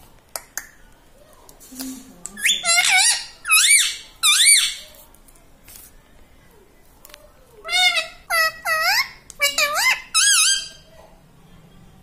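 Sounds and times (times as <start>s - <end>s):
parrot squeaky calls: 2.4s - 4.9s, 7.6s - 10.9s.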